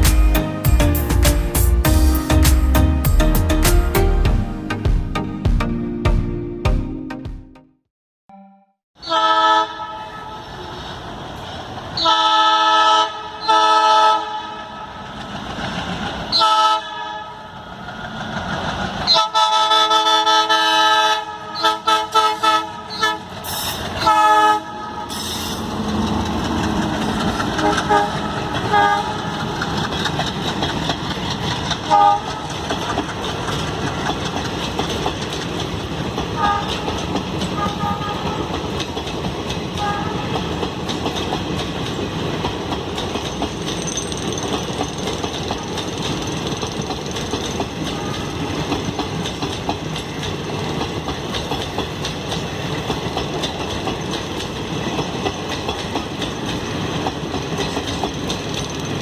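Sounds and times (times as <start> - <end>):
train rumbling: 0.0 - 5.2, 10.3 - 16.8, 17.5 - 59.0
locomotive air horn: 9.0 - 10.6, 12.0 - 14.7, 19.1 - 25.6, 27.6 - 29.4, 31.9 - 32.5, 36.4 - 38.5, 39.8 - 40.4
wheels clacking over rail joints: 25.5 - 59.0.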